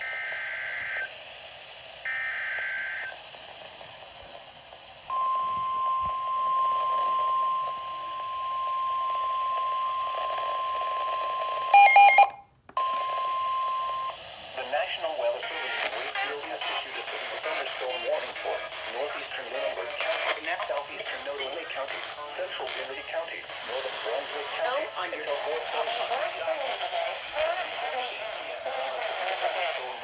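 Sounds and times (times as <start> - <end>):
radio hiss: 0.0 - 11.8, 13.0 - 30.0
steady warning tone: 5.1 - 14.1
electronic beep: 11.7 - 14.1.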